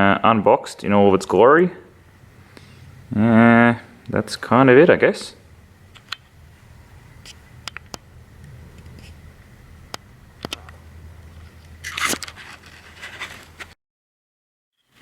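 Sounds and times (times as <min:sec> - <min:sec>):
rustling scrape: 0:08.4 - 0:09.6, 0:11.2 - 0:13.8.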